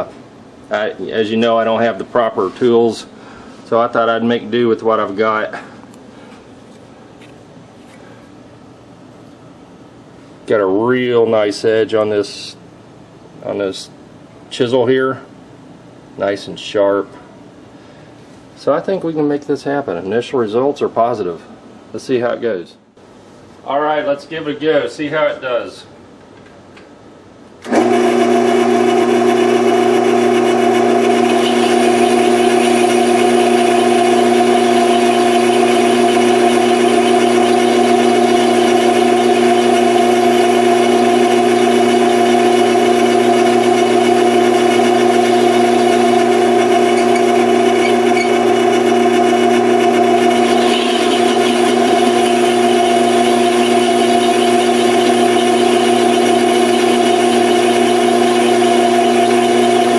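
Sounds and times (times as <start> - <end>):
lathe motor humming: 27.7 - 59.9.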